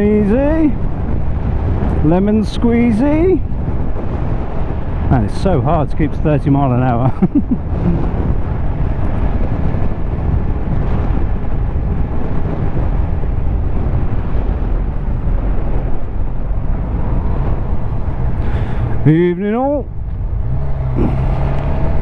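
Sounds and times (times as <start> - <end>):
wind rushing over microphone: 0.0 - 22.0.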